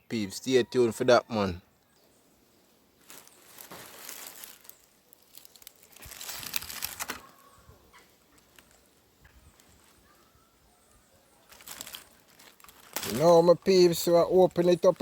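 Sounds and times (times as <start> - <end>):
dry leaves rustling: 3.0 - 10.6, 11.4 - 15.0.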